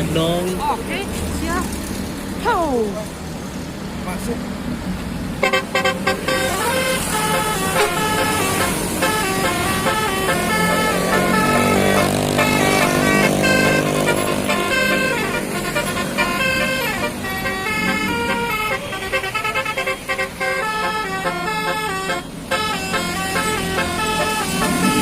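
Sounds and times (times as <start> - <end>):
musical bus air horn tune: 5.4 - 25.0.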